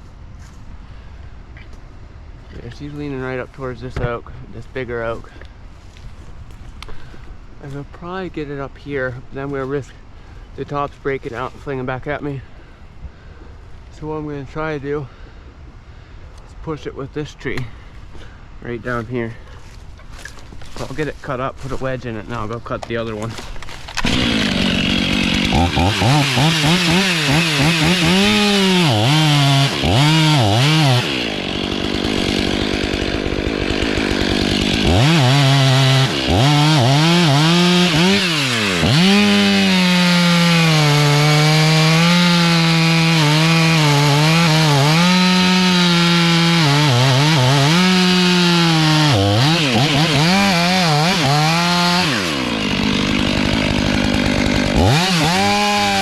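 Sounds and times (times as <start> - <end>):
chainsaw cutting tree: 23.3 - 56.0.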